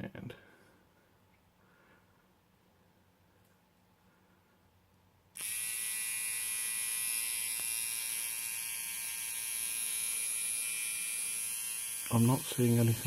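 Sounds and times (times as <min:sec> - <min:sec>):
nose trimmer motor whine: 0:05.4 - 0:13.0.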